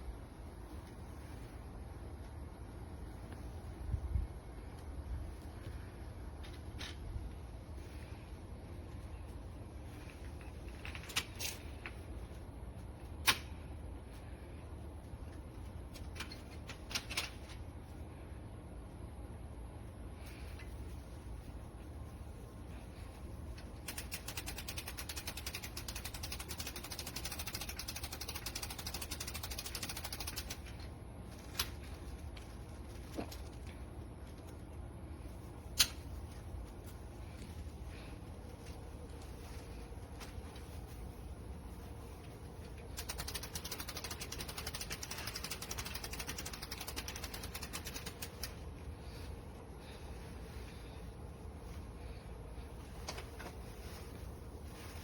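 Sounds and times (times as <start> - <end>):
umbrella crank ratchet clicking: 23.7 - 30.8, 43.0 - 48.6.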